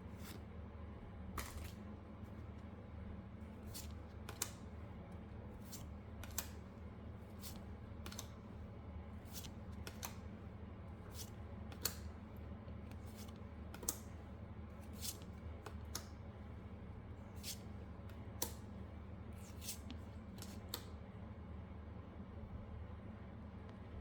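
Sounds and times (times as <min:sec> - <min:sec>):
trading cards clicking and snapping: 0:03.7 - 0:04.7, 0:05.6 - 0:06.6, 0:07.4 - 0:08.4, 0:09.3 - 0:10.3, 0:11.2 - 0:12.1, 0:12.9 - 0:14.2, 0:14.8 - 0:16.2, 0:17.4 - 0:18.7, 0:19.4 - 0:20.9.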